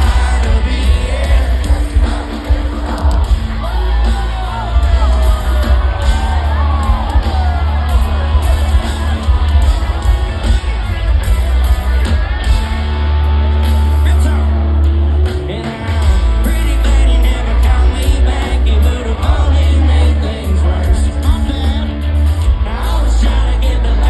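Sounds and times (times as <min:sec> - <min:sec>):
person singing: 0:00.0 - 0:07.6, 0:14.0 - 0:24.0
country-rock band playing: 0:00.0 - 0:24.0
crowd noise: 0:00.0 - 0:24.0.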